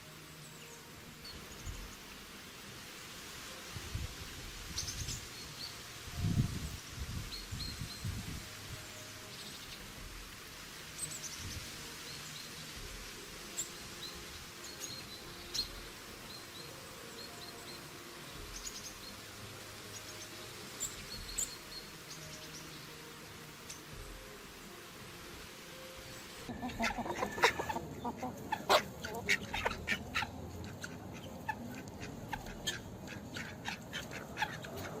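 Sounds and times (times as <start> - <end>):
songbirds chirping: 0.0 - 35.0
stream rushing: 1.0 - 7.2.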